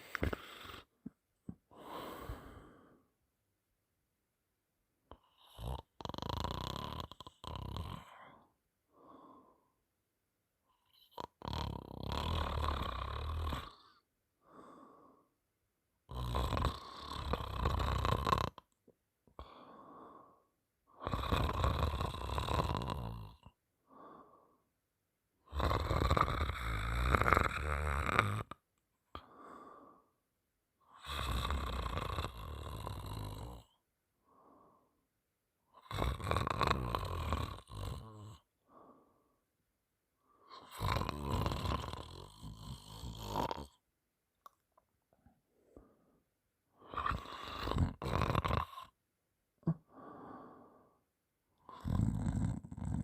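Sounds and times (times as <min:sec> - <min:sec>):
person snoring: 0:00.0 - 0:00.9, 0:01.7 - 0:03.0, 0:05.1 - 0:09.5, 0:10.9 - 0:15.3, 0:16.1 - 0:18.7, 0:19.4 - 0:24.6, 0:25.4 - 0:28.6, 0:30.9 - 0:33.8, 0:35.7 - 0:38.9, 0:40.4 - 0:43.8, 0:46.8 - 0:49.0, 0:49.6 - 0:51.0, 0:51.6 - 0:53.0.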